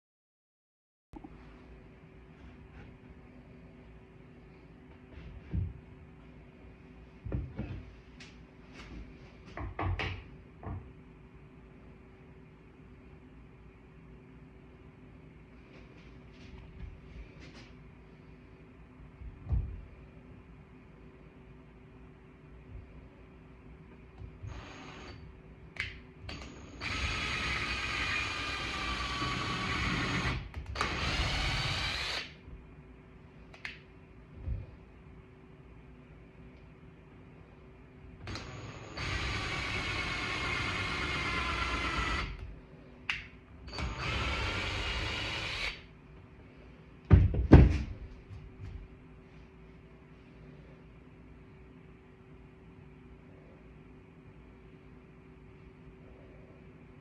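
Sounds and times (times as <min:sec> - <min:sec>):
faint steady hum: 0:01.2 - 0:57.0
knocks and clatters on a bench: 0:09.4 - 0:10.9
power drill bursts: 0:26.3 - 0:32.3, 0:38.3 - 0:42.4, 0:43.7 - 0:45.8.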